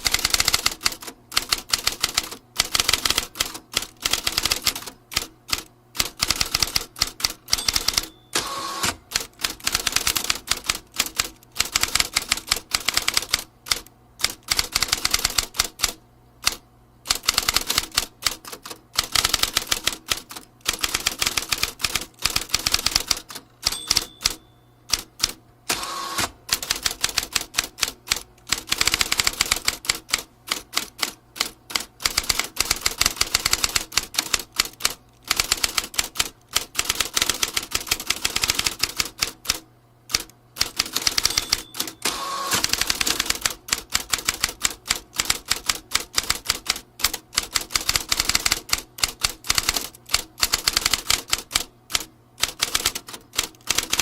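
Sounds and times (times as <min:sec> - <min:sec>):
typewriter key strikes: 0:00.0 - 0:15.9, 0:16.5 - 0:25.4, 0:26.5 - 0:54.0.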